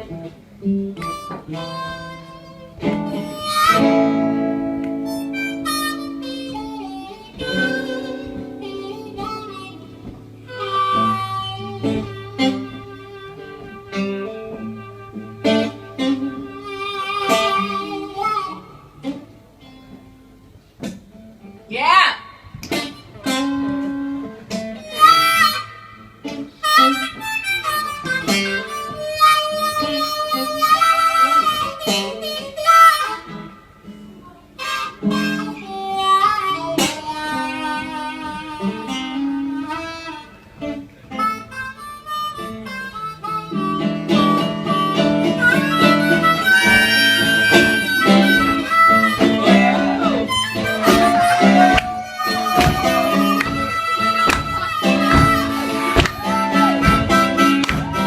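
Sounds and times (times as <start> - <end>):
blues harmonica with bent notes: 0.0 - 20.6, 22.7 - 58.0
acoustic guitar accompaniment: 0.0 - 58.0.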